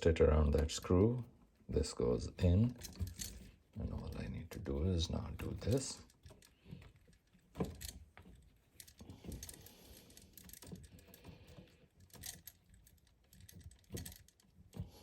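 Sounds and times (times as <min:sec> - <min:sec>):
hands twisting wire connector: 0:02.4 - 0:15.0.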